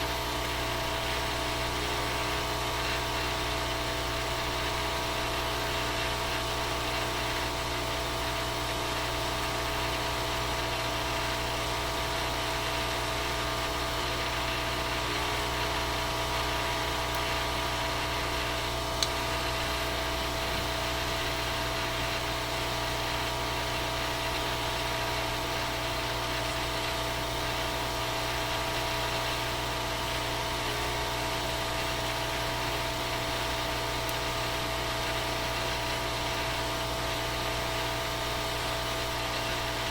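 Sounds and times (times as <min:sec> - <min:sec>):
machine-like hum: 0:00.0 - 0:39.9.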